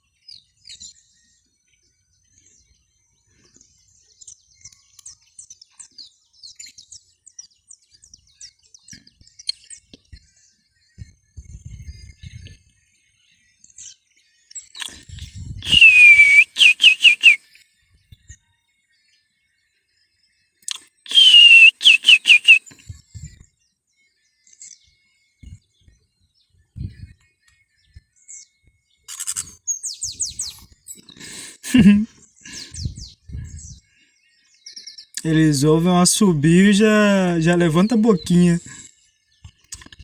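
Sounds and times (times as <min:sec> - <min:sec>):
whistled call falling notes: 0:15.6 - 0:17.4, 0:21.1 - 0:22.7, 0:35.2 - 0:38.7.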